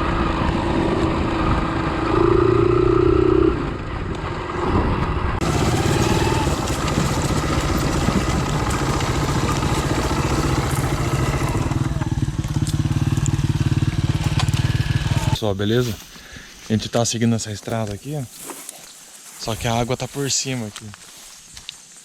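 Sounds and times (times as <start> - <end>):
motorcycle engine running: 0.0 - 15.4.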